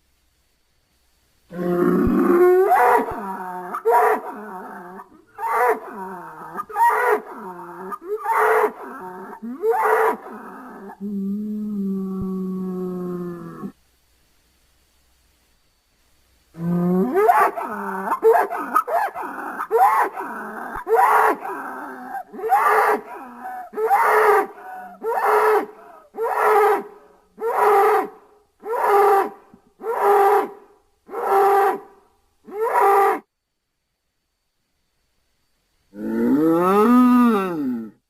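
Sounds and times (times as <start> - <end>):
cartoon bull calls: 1.5 - 11.2.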